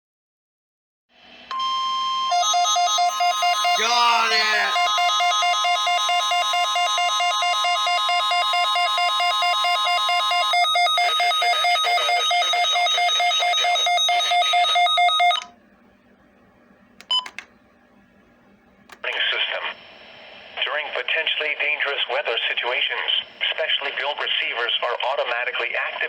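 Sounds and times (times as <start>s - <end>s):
steady warning alarm tone: 1.5s - 15.5s
rapidly pulsing alarm beep: 1.6s - 15.5s.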